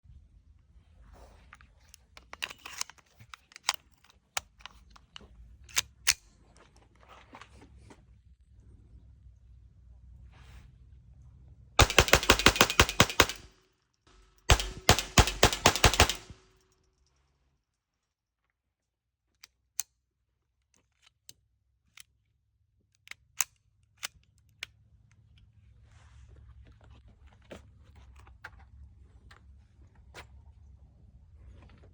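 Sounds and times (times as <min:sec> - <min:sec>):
rifle gunshots: 0:11.8 - 0:13.5, 0:14.4 - 0:16.5
sharp clicks: 0:11.8 - 0:13.5, 0:14.2 - 0:16.5.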